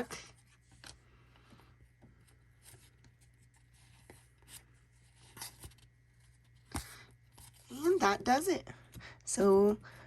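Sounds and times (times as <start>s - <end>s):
low steady hum: 0.0s - 10.0s.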